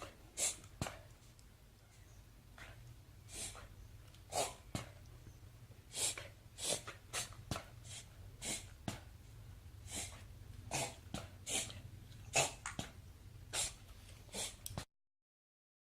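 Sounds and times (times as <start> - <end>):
dog sneezing and snorting: 0.0 - 1.0, 2.6 - 3.7, 4.3 - 5.0, 5.9 - 9.1, 9.9 - 12.9, 13.5 - 14.6.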